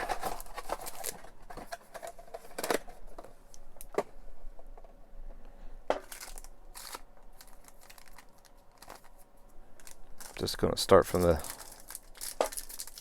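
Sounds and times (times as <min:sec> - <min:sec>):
card pack wrapper rustling: 0:00.0 - 0:03.3, 0:06.0 - 0:13.0.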